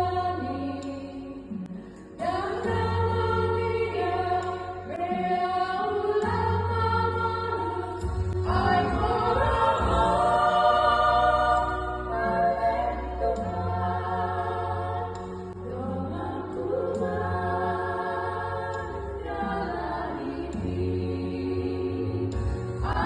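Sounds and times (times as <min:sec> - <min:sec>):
women's choir singing a hymn: 0:00.0 - 0:23.0.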